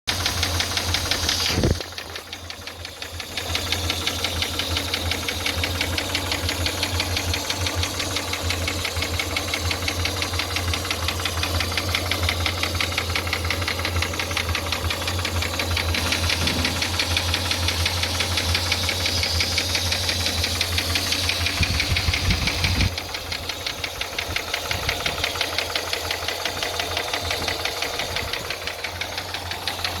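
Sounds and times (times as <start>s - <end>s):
engine running with rhythmic knock: 0.1s - 30.0s.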